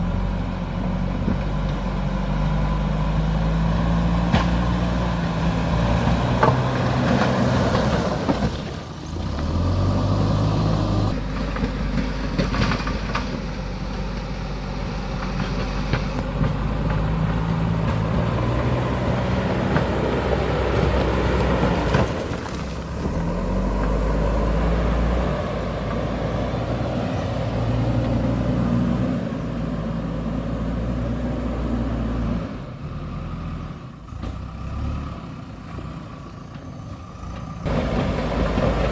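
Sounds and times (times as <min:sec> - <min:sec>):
backhoe diesel engine revving: 0:00.0 - 0:38.9.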